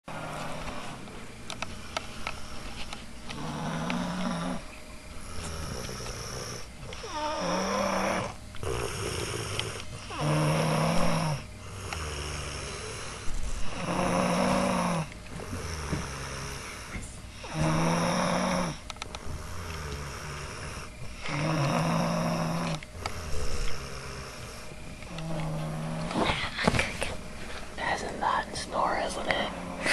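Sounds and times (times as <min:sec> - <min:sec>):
quiet breathing: 0:00.1 - 0:29.9
person snoring loudly: 0:03.3 - 0:04.6, 0:05.2 - 0:26.3.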